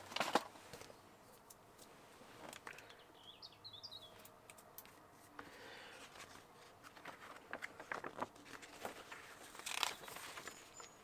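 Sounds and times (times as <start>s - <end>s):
packaging rustling: 6.0s - 11.0s.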